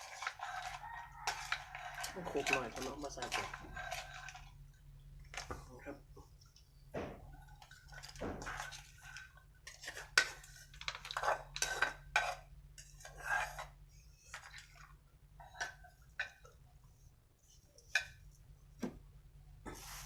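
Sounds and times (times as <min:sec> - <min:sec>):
spoon scraping and clinking dish: 0:00.0 - 0:04.6, 0:07.7 - 0:14.8.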